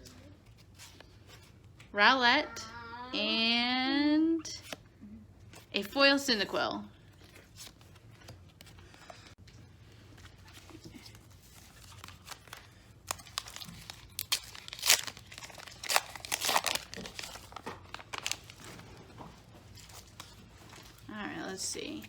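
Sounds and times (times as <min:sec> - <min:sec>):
wrapper tearing and crinkling: 0:10.6 - 0:18.9.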